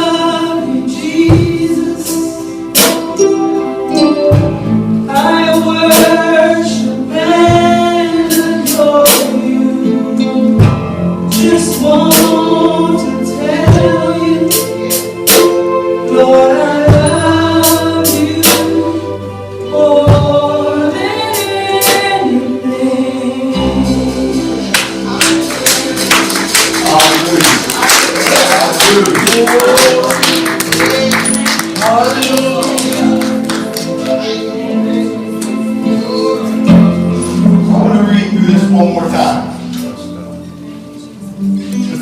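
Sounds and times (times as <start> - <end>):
band with bass line: 0.0 - 42.0
voices singing gospel: 0.0 - 42.0
percussion hits: 24.1 - 34.3.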